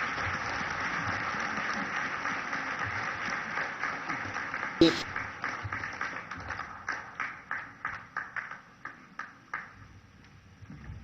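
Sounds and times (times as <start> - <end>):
audience applause: 0.0 - 9.7.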